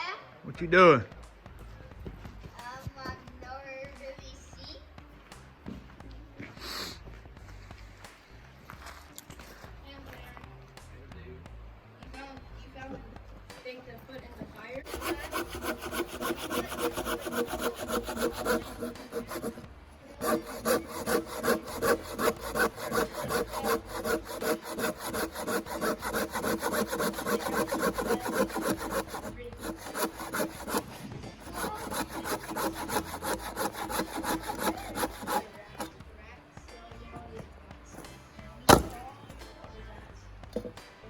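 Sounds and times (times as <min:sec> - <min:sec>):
hand saw cutting wood: 0:14.8 - 0:36.0, 0:38.7 - 0:39.0.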